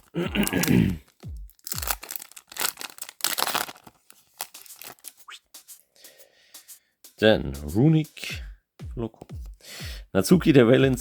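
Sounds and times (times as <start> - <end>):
wrapper tearing and crinkling: 0.0 - 5.2.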